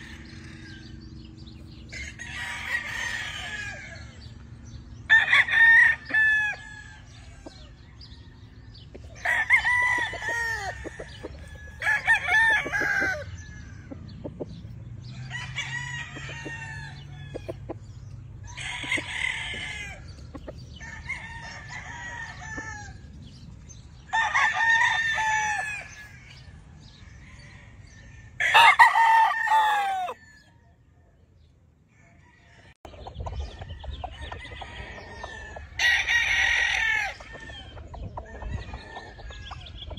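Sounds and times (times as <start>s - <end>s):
roosters crowing: 0.0s - 39.9s.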